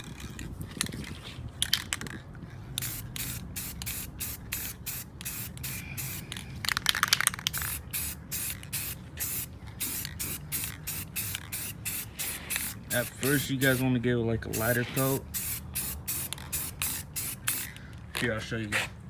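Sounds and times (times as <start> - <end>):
spray paint can hissing in bursts: 2.8 - 13.9, 14.5 - 17.7.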